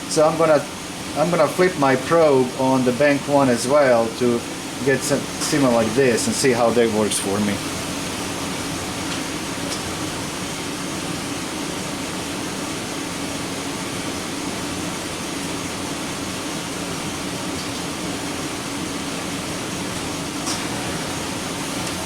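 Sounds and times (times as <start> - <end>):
engine running with misfire: 15.5 - 22.0.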